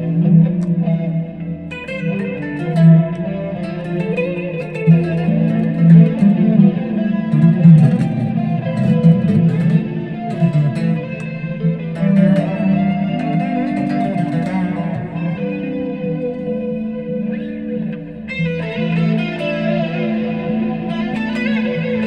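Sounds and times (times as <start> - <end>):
electric guitar with amp effects: 0.0 - 22.0.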